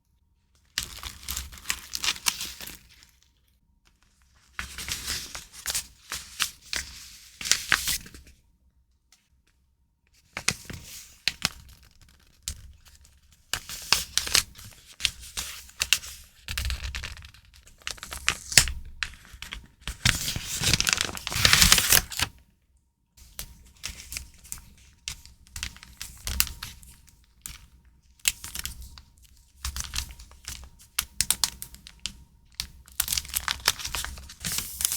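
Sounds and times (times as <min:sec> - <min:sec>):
packaging crinkling: 0:17.0 - 0:22.3, 0:32.8 - 0:34.9.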